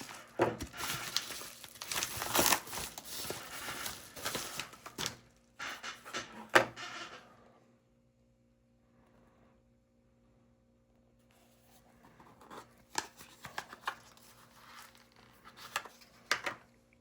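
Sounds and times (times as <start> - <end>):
packaging crinkling and rustling: 0.0 - 5.4, 12.8 - 16.6.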